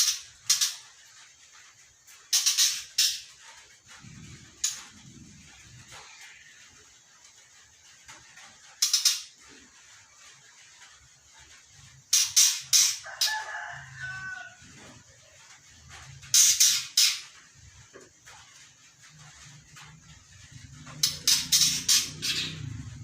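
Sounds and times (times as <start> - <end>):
bird harsh rasping calls: 21.0 - 22.7.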